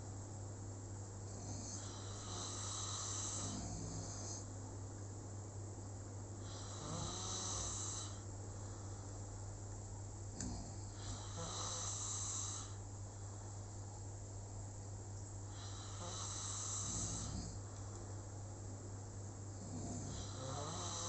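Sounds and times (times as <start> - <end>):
steady low hum: 0.0 - 21.0
snoring: 1.3 - 4.5, 6.4 - 8.3, 10.4 - 12.8, 15.5 - 17.6, 19.6 - 21.0.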